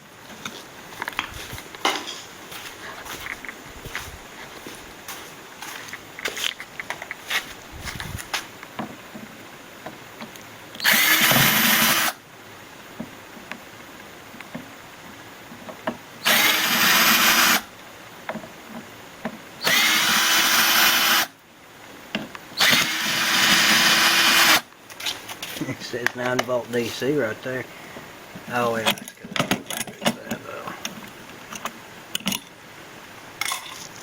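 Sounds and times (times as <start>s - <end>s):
power drill spinning: 10.8s - 12.2s, 16.2s - 17.7s, 19.6s - 21.3s, 22.6s - 24.6s
small clicks and handling knocks: 28.8s - 32.5s.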